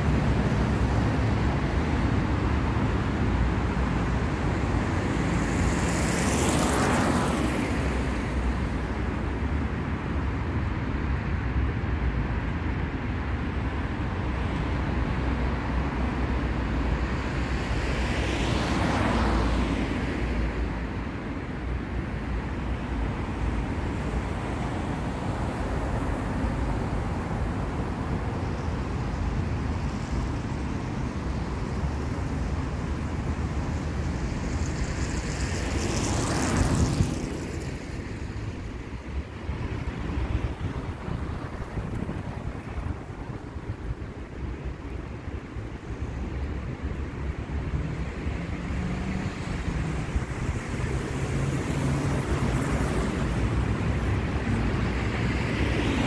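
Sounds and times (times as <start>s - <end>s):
traffic rumble: 0.0s - 56.0s
vehicles passing close by: 0.0s - 56.0s.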